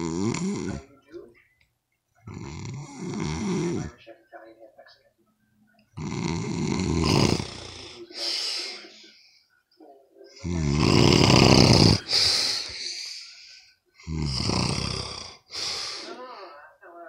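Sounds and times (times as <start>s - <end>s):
loud rattling snoring: 0.0s - 0.8s, 2.2s - 3.9s, 6.0s - 8.0s, 10.4s - 12.4s, 14.0s - 16.0s.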